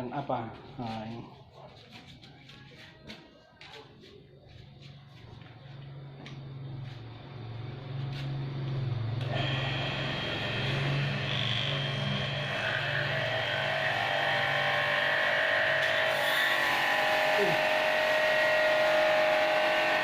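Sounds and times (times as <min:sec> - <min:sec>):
pressure washer motor humming: 0:09.2 - 0:20.0.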